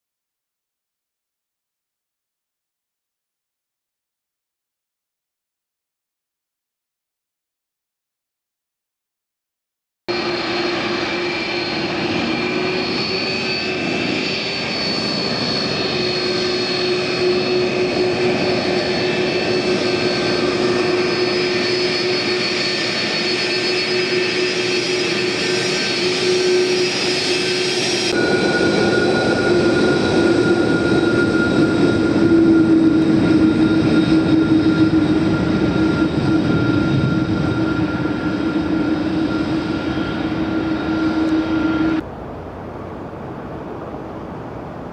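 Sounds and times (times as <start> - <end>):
jet engines at takeoff power: 10.1 - 44.9.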